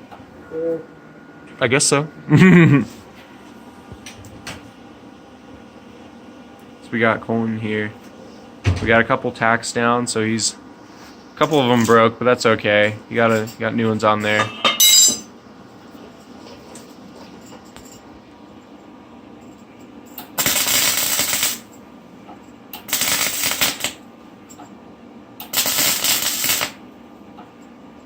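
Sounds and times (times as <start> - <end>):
welder arc crackling: 20.2 - 21.7, 22.7 - 24.0, 25.4 - 26.8.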